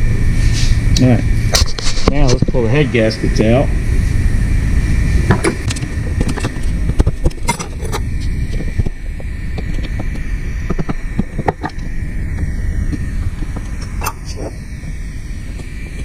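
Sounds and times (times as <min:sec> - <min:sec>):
steady low hum: 0:00.0 - 0:16.0
metallic clinks of engine parts: 0:07.3 - 0:08.0.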